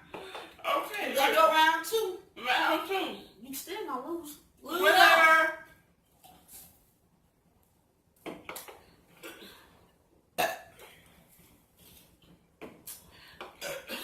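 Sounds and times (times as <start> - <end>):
person burping: 10.4 - 10.7.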